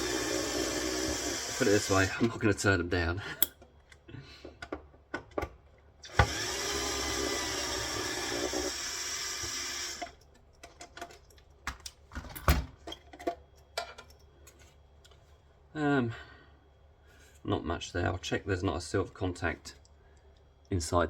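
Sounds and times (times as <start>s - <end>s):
power drill whining: 0.0s - 2.2s, 6.0s - 10.2s
parts clicking and knocking: 9.4s - 15.2s.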